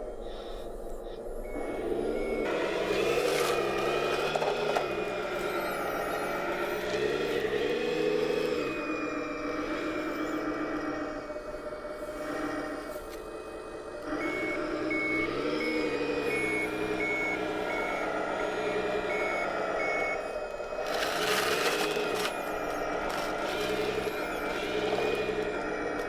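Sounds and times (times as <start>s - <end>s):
simulated diesel engine: 0.1s - 26.0s.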